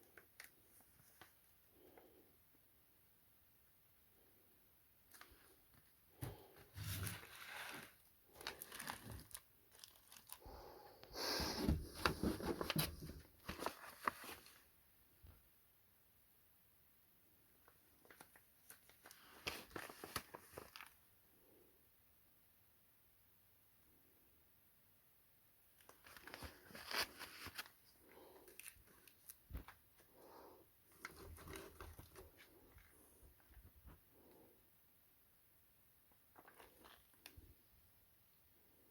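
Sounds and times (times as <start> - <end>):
crinkling and rustling: 0.0 - 1.9, 5.0 - 10.6, 11.2 - 14.7, 17.6 - 21.1, 25.7 - 30.2, 30.9 - 34.3, 36.1 - 37.6.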